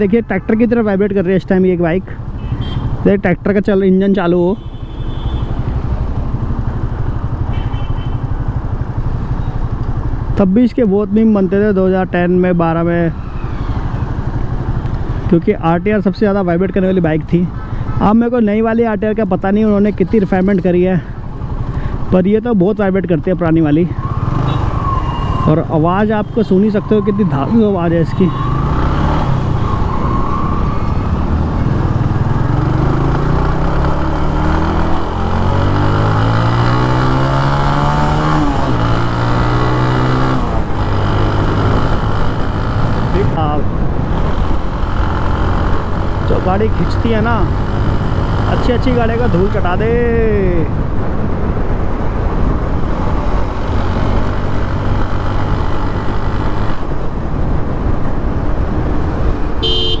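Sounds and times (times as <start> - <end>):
motorcycle engine accelerating: 24.0 - 60.0.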